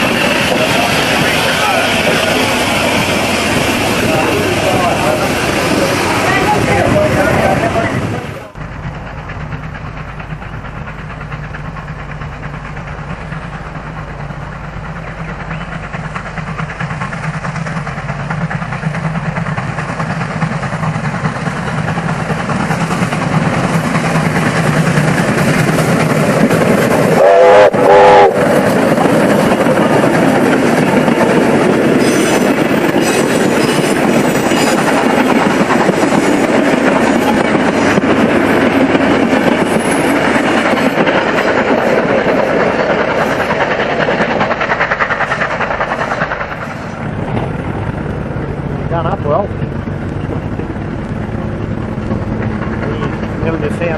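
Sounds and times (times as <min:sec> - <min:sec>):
steam locomotive approaching: 0:00.0 - 0:53.9
train wheels clacking: 0:00.0 - 0:53.9
steam whistle blasts: 0:27.1 - 0:28.4.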